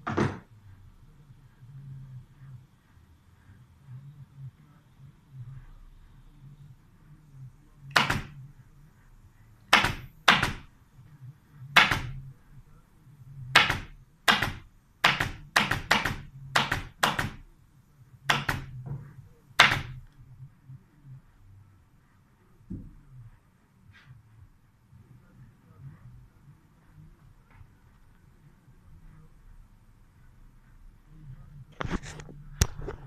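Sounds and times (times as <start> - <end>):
staple gun shots into wood: 9.7 - 10.6, 13.6 - 17.4.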